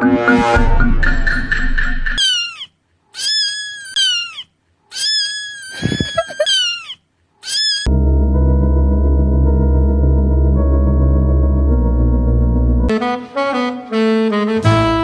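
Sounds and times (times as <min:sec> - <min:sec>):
cat meowing: 0:02.2 - 0:07.9.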